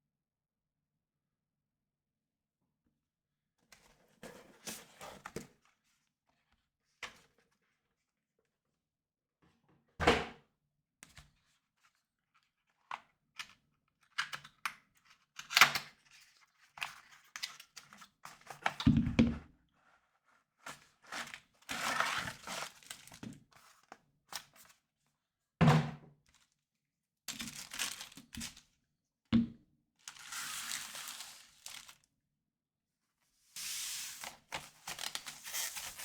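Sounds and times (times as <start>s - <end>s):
packaging rustling and tearing: 21.1s - 23.2s, 27.3s - 28.5s, 30.1s - 32.0s, 34.0s - 36.0s.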